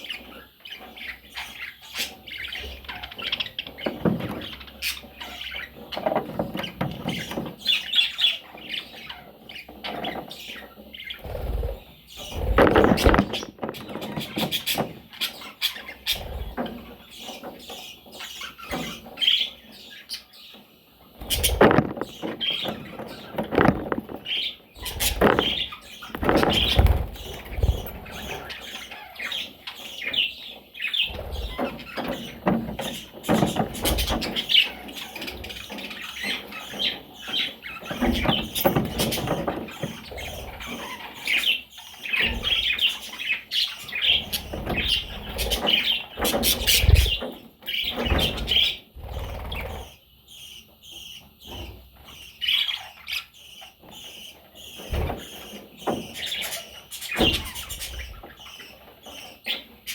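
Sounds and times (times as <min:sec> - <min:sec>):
budgerigar chicks chirping: 0:00.0 - 0:59.9
bumps and thumps: 0:11.4 - 0:15.0, 0:21.2 - 0:28.5.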